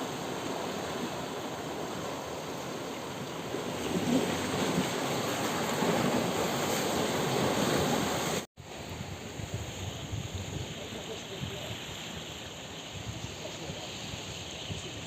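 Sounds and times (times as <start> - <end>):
sea waves washing among rocks: 0.0 - 8.5.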